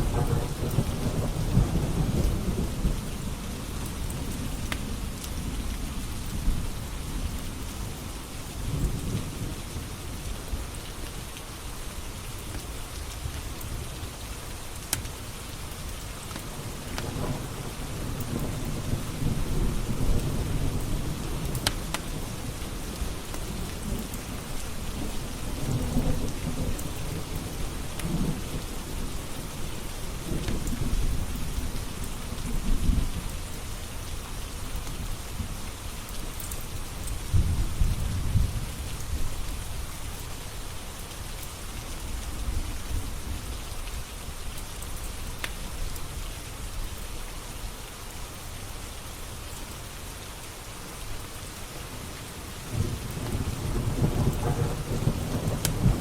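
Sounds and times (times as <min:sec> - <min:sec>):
thunder rumbling: 0:00.0 - 0:03.6, 0:37.3 - 0:39.9, 0:52.7 - 0:56.0
steady rain: 0:00.0 - 0:56.0.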